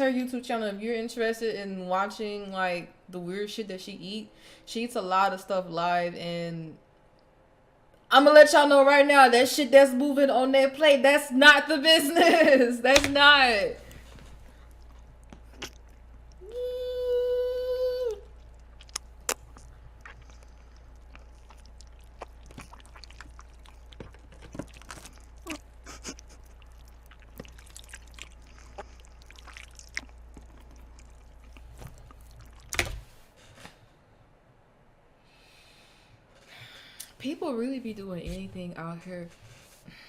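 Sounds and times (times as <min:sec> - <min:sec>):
person chewing: 0:13.9 - 0:16.6, 0:18.2 - 0:32.9
mouth clicks and smacks: 0:14.6 - 0:16.6, 0:18.2 - 0:33.0.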